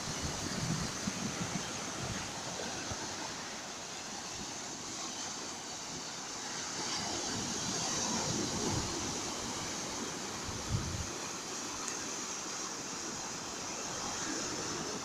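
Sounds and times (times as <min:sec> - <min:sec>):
ocean surf washing: 0:00.0 - 0:15.0
wind buffeting microphone: 0:07.6 - 0:11.2.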